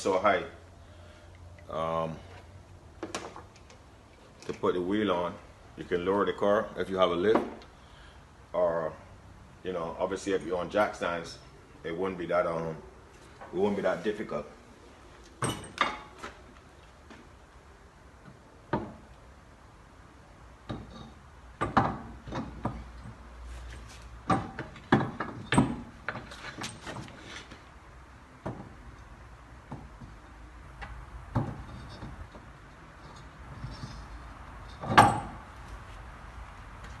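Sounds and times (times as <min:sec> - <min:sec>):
wheel knocks and clanks: 0:15.4 - 0:16.4, 0:20.6 - 0:27.6, 0:29.6 - 0:35.8.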